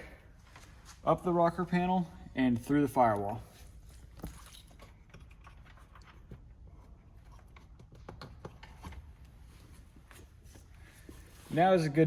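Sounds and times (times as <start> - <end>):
faint clicks and rustles of wire: 2.4 - 11.6.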